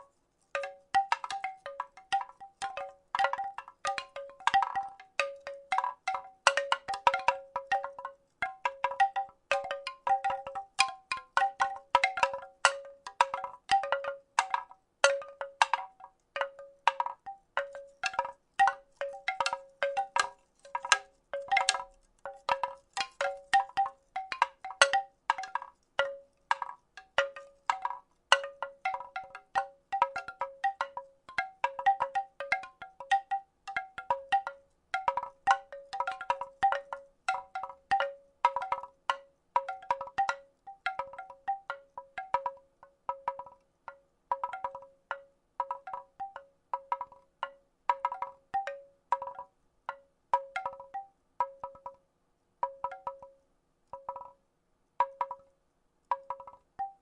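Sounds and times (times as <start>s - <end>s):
wooden rattle clacking: 0.0s - 42.6s, 54.0s - 54.4s, 56.1s - 56.9s.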